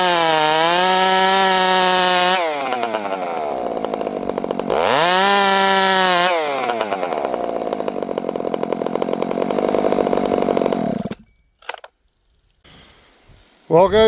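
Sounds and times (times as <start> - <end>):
chainsaw revving and idling: 0.0 - 11.2.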